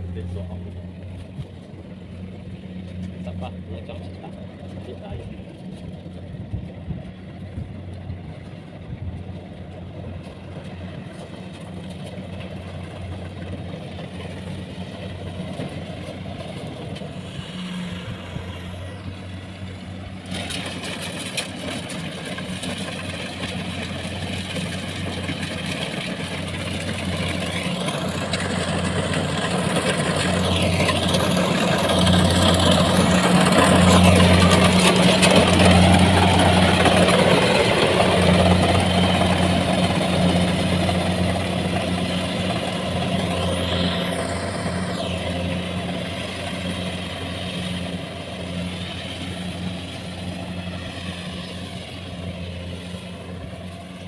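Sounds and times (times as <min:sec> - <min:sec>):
combine harvester engine running: 0:00.0 - 0:54.0.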